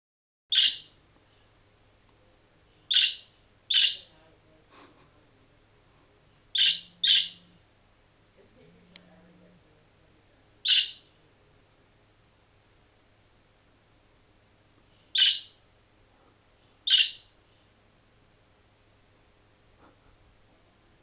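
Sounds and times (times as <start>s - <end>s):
budgerigar chirping: 0.5s - 1.0s, 2.9s - 4.1s, 6.5s - 7.5s, 10.6s - 11.1s, 15.1s - 15.6s, 16.8s - 17.3s.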